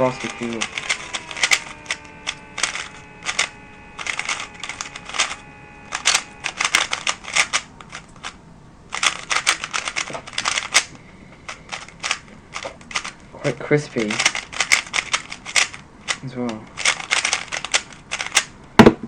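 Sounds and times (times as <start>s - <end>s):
plastic puzzle cube clicking: 0.0s - 10.9s, 11.7s - 13.2s, 13.8s - 18.6s.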